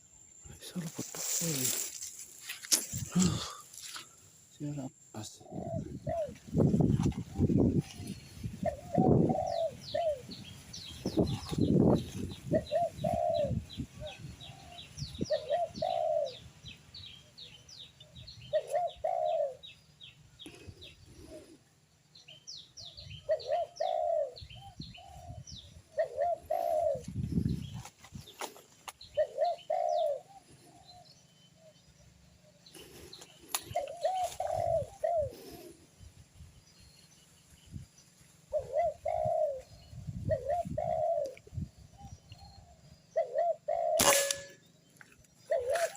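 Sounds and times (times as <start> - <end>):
small birds chirping: 0.0 - 45.9
dove cooing: 5.4 - 6.4, 7.2 - 10.5, 12.4 - 16.4, 18.5 - 19.7, 23.1 - 27.7, 29.1 - 31.1, 32.8 - 35.8, 38.5 - 41.4, 42.0 - 44.5, 45.4 - 45.9.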